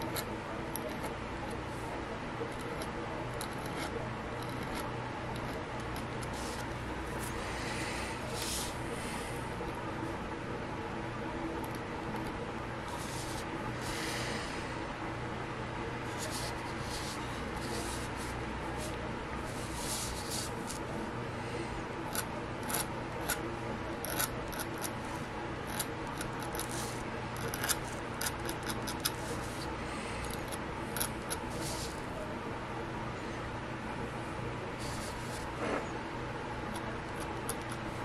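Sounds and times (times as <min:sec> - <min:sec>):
electrical hum: 0:00.0 - 0:38.0
pen scratching on paper: 0:02.5 - 0:08.8, 0:12.9 - 0:14.1, 0:16.0 - 0:20.8, 0:25.7 - 0:29.7, 0:30.3 - 0:32.0, 0:34.8 - 0:35.8.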